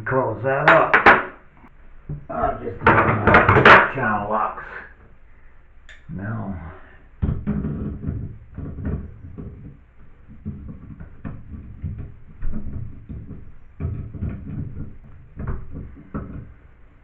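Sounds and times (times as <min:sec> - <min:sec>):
metallic knocks and scraping: 0:00.7 - 0:04.0, 0:07.2 - 0:17.0.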